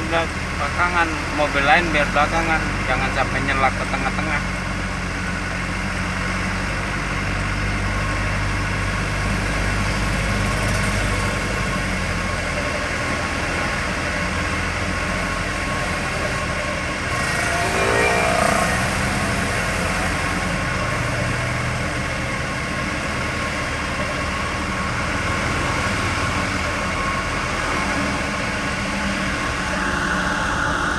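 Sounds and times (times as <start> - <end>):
road noise: 0.0 - 30.9
vehicle engine hum: 0.0 - 30.9
rising and falling pitched sound: 17.0 - 20.7.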